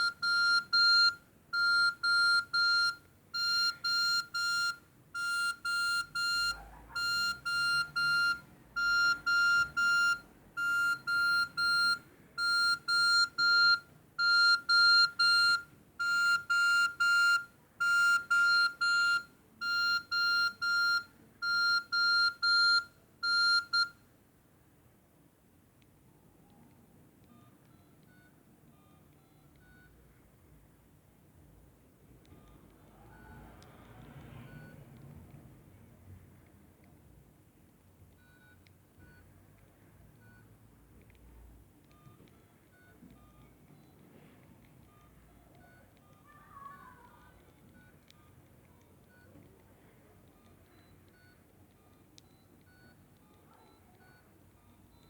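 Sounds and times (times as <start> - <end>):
phone beeping ringtone: 0.0 - 24.0, 27.3 - 29.9, 34.5 - 34.8, 44.8 - 46.8.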